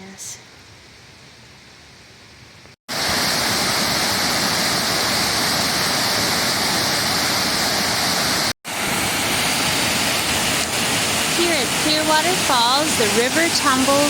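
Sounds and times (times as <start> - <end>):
waterfall pouring: 2.9 - 14.0.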